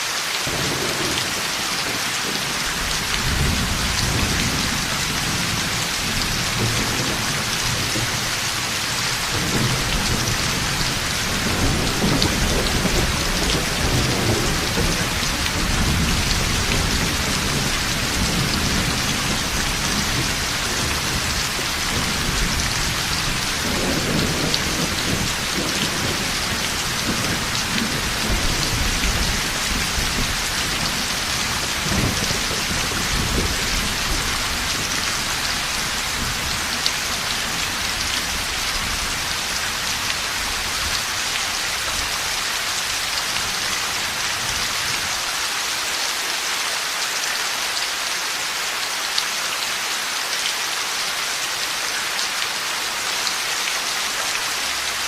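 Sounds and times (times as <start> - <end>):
heavy rain falling: 0.0 - 55.0
thunder rumbling: 2.2 - 40.7.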